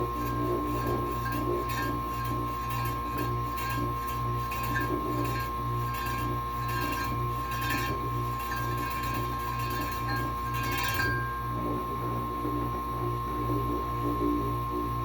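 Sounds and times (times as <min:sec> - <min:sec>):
dehumidifier compressor humming: 0:00.0 - 0:15.0
light metallic clinking: 0:00.1 - 0:11.7.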